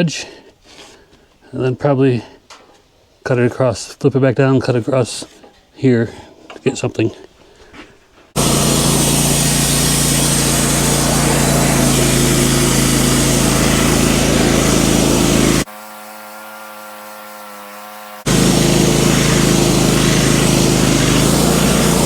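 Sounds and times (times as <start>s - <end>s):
band sawmill cutting log: 8.4s - 22.0s.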